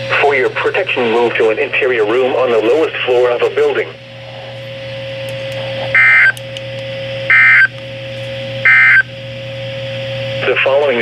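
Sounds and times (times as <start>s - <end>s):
digital data tone bursts: 6.0s - 6.4s, 7.3s - 7.7s, 8.6s - 9.1s.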